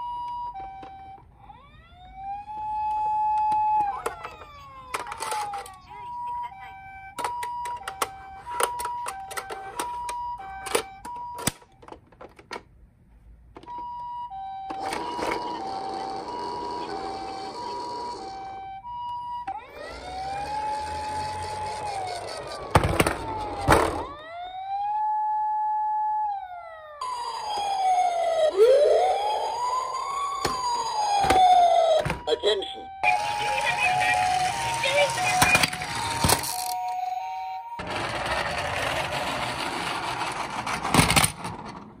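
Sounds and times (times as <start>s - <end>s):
toy electronic siren wailing: 0.0s - 11.5s, 13.7s - 38.7s
loud clatter: 37.8s - 42.0s
plastic toy vehicle rattling: 37.8s - 42.0s.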